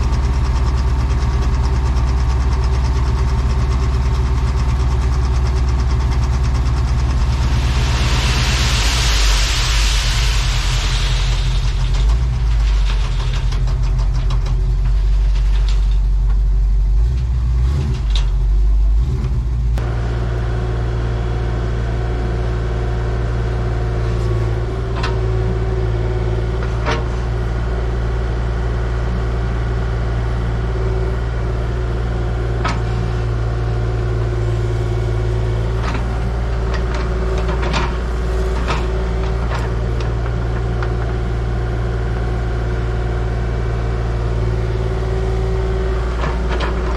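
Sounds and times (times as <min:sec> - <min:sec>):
heavy equipment engine running: 0:00.0 - 0:46.9.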